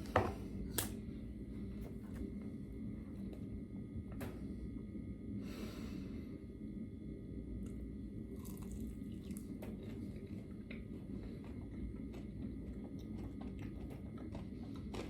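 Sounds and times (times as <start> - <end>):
low background hum: 0.0 - 15.0
person chewing: 8.4 - 15.0.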